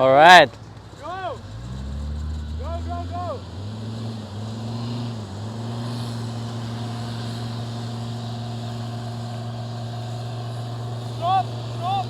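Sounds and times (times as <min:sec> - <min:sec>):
engine running under load: 0:00.0 - 0:12.0.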